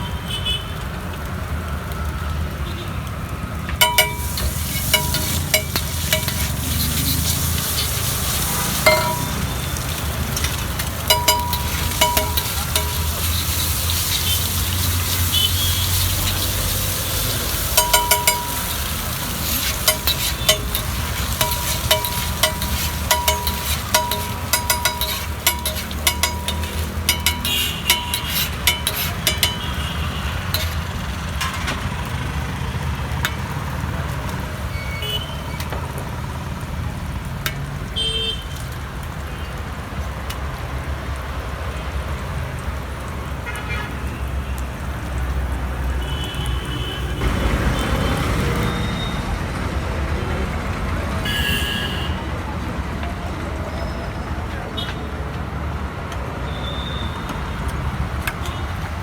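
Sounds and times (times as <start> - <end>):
street traffic rumble: 0.0 - 59.0
vehicle horn toots: 51.3 - 52.2.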